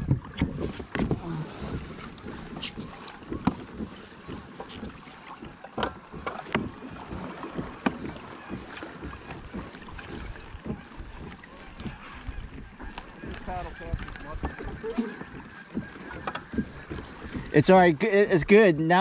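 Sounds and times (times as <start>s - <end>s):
sharp knocks on kayak: 0.0s - 1.2s, 1.8s - 5.0s, 5.7s - 12.0s
wind on microphone: 0.0s - 4.0s
water rustling wash: 0.0s - 19.0s.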